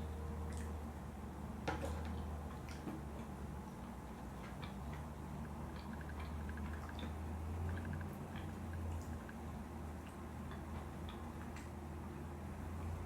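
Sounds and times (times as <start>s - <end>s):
wet chewing clicks and smacks: 2.2s - 11.8s.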